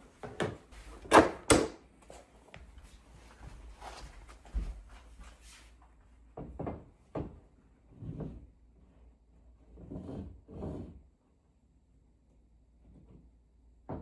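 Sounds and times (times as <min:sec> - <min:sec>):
rubbing and shuffling noises: 0:02.0 - 0:06.2.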